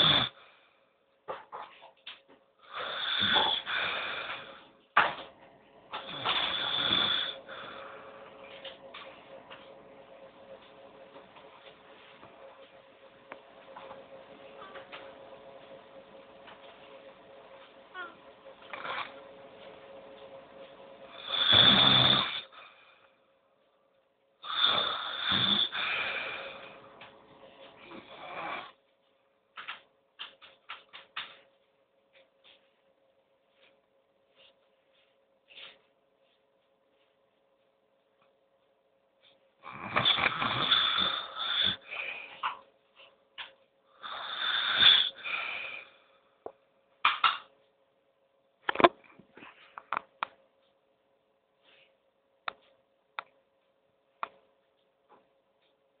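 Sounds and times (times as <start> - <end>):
person snoring loudly: 0.0 - 0.4, 2.7 - 4.6, 6.0 - 7.9, 21.1 - 22.6, 24.4 - 26.7, 27.8 - 28.8, 39.6 - 42.1, 44.0 - 45.9.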